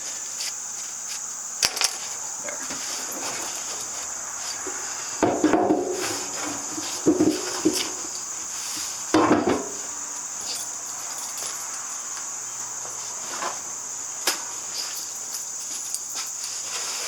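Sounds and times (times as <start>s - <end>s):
crickets chirring: 0.0s - 17.0s
metal tools clattering: 1.6s - 3.7s.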